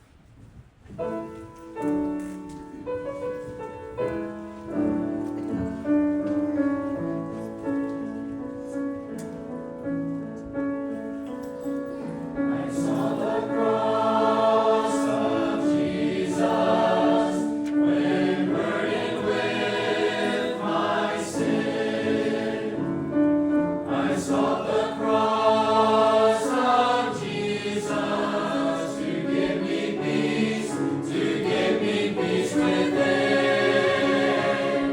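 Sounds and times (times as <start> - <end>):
church choir singing gospel: 12.3 - 34.9.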